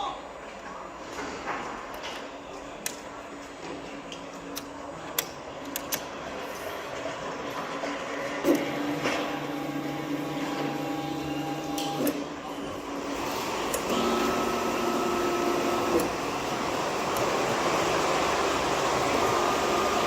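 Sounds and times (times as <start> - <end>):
industrial machinery humming: 6.9 - 20.0.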